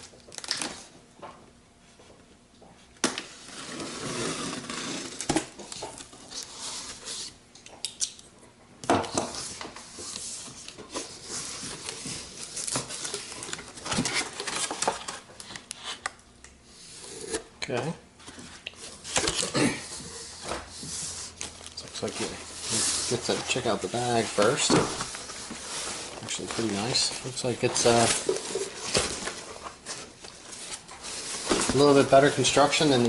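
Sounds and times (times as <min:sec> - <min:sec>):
cardboard packaging rustling: 0:09.2 - 0:16.0, 0:18.3 - 0:33.0.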